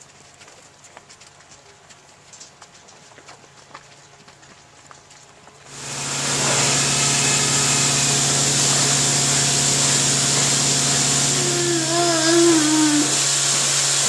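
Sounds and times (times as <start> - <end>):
milking machine humming: 5.7 - 14.0
short wavering pitched sound: 11.3 - 13.2.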